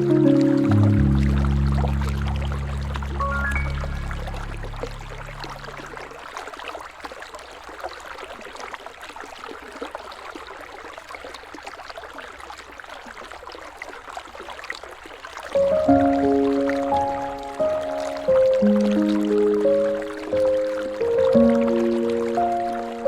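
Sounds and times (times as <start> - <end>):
soft sustained music: 0.0 - 6.2, 15.6 - 23.0
river water rippling: 0.0 - 23.0.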